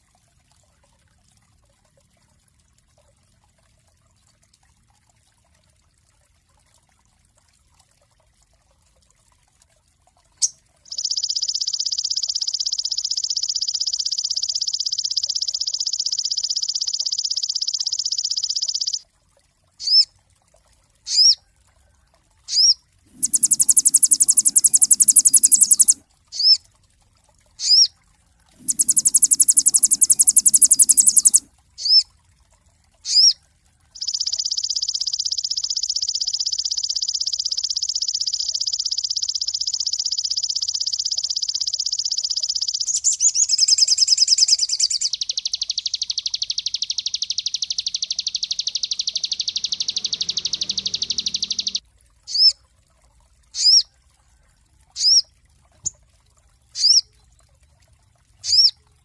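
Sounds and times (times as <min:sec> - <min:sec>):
songbird trilling: 0:10.4 - 0:19.0, 0:19.8 - 0:20.0, 0:21.1 - 0:21.4, 0:22.5 - 0:26.6, 0:27.6 - 0:27.9, 0:28.6 - 0:32.0, 0:33.1 - 0:33.4, 0:37.1 - 0:52.5, 0:53.6 - 0:53.8, 0:56.8 - 0:57.0, 0:58.5 - 0:58.7.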